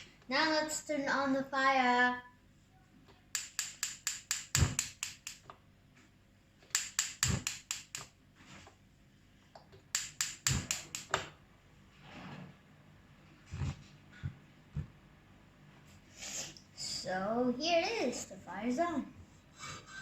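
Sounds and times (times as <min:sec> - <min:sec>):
gas stove igniter clicking: 0:03.3 - 0:05.5, 0:06.7 - 0:08.2, 0:09.9 - 0:11.3.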